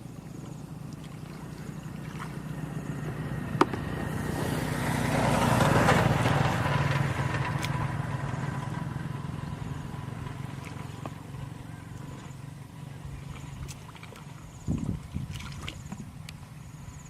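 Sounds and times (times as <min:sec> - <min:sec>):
engine humming: 0:00.0 - 0:17.0.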